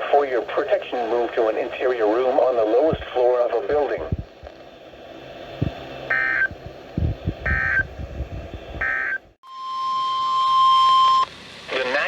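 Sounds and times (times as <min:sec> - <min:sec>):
steady warning alarm tone: 0:05.6 - 0:06.6, 0:07.4 - 0:07.9, 0:08.7 - 0:11.3
digital data tone bursts: 0:06.1 - 0:06.5, 0:07.4 - 0:07.9.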